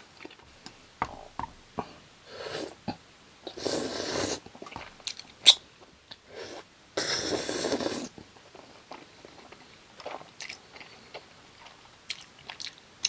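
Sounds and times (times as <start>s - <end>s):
close-miked chewing: 7.6s - 12.8s.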